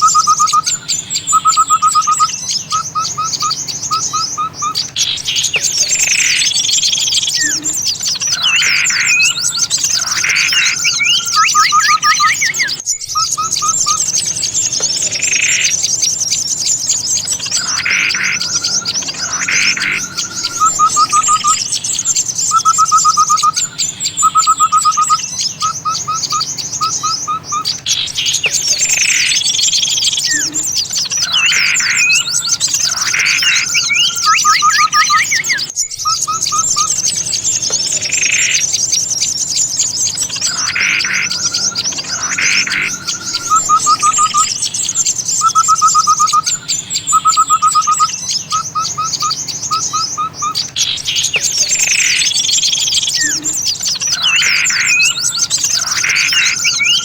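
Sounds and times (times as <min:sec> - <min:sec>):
songbirds chattering and trilling: 0:00.0 - 0:57.0.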